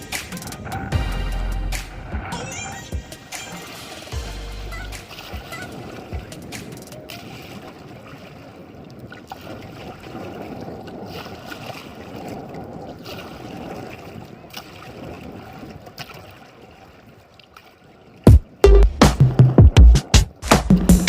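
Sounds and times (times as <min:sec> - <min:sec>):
loud electronic music: 0:00.0 - 0:07.0, 0:18.3 - 0:21.0
sea water and wind rushing: 0:00.0 - 0:20.4.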